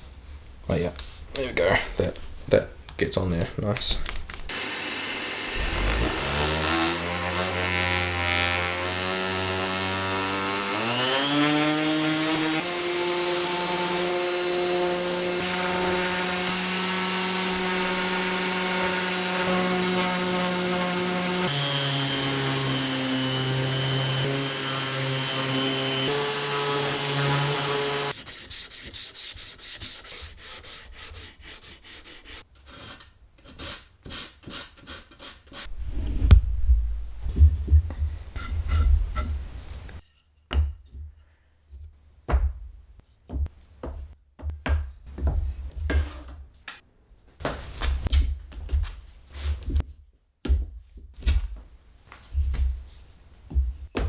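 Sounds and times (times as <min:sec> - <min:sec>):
orbital sander whining: 0:04.5 - 0:28.1
hand sanding wood strokes: 0:04.5 - 0:32.5, 0:37.0 - 0:40.0.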